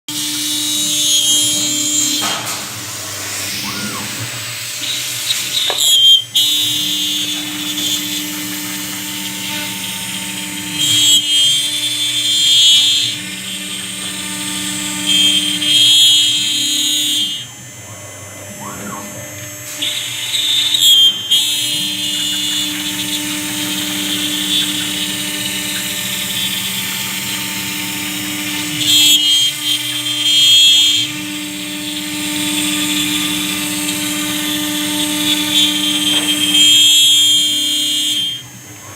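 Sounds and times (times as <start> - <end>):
router spindle humming: 0.1 - 38.9
high-pitched cutting passes: 3.2 - 4.9, 18.4 - 19.5.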